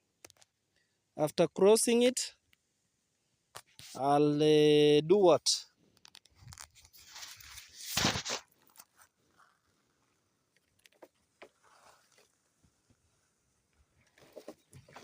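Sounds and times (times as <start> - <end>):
rustling and crunching handling: 5.9 - 15.0.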